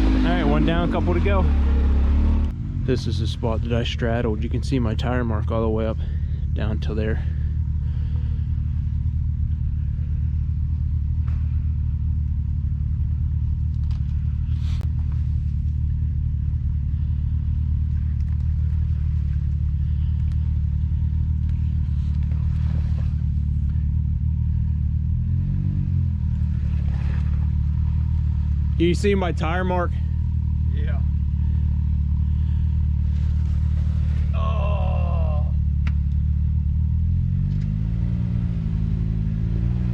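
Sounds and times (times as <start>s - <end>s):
engine rev: 0.0s - 39.9s
utility vehicle engine idling: 0.0s - 39.9s.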